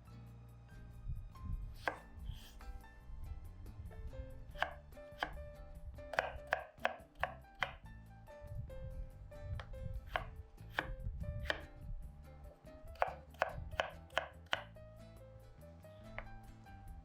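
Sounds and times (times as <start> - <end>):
knife chopping on cutting board: 1.8 - 2.6, 4.5 - 5.4, 6.1 - 7.8, 9.6 - 11.7, 12.9 - 14.7.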